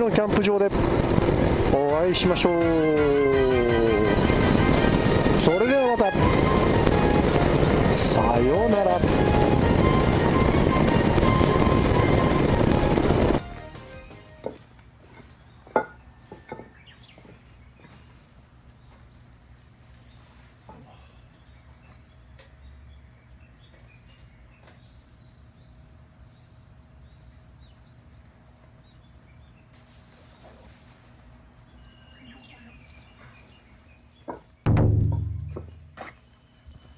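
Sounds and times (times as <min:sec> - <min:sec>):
faint birds chirping: 0:14.4 - 0:36.9.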